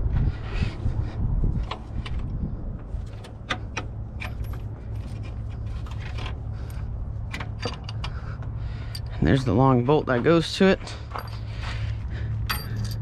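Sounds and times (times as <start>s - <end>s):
steady low rumble: 0.0s - 13.0s
metal tools clinking: 4.1s - 8.2s, 10.1s - 11.6s, 12.4s - 13.0s.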